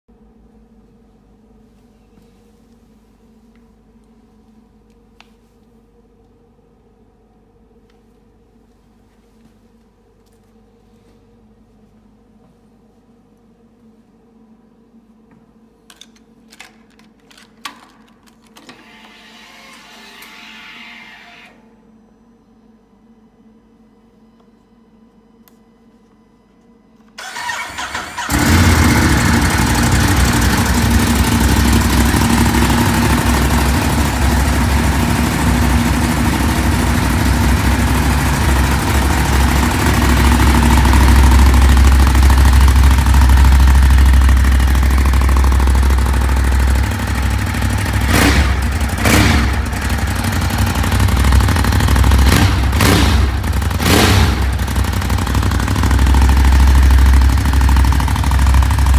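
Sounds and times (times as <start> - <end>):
engine starter cranking: 27.2 - 30.0
engine revving bursts: 27.2 - 41.6, 47.2 - 56.0
motorcycle engine idling: 27.3 - 58.9.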